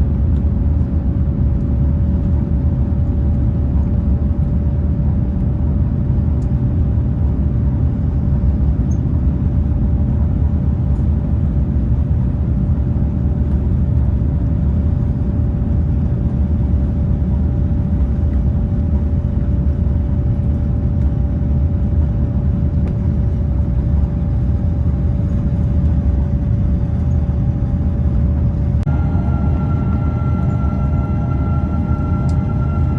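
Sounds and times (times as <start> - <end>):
aircraft cabin engine rumble: 0.0 - 32.9
steady hum tone: 23.7 - 32.9.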